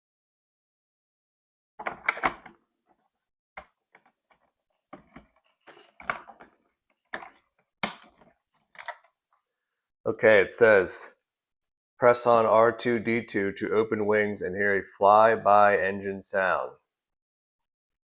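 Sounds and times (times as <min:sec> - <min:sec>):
plastic clicks and knocks: 0:01.8 - 0:02.6, 0:03.6 - 0:09.2.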